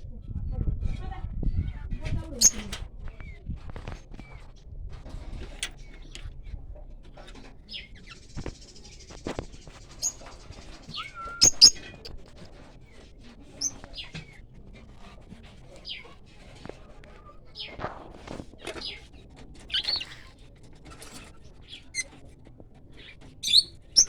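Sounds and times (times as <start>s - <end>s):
cage birds chirping: 1.6s - 24.0s
buzzy bird chatter: 2.3s - 4.7s, 5.3s - 24.0s
parrot squawks: 11.0s - 11.8s.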